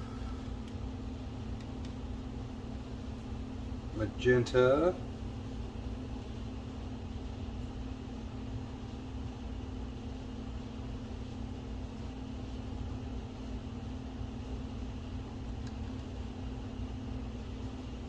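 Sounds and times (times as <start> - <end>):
steady mechanical hum: 0.0 - 18.0.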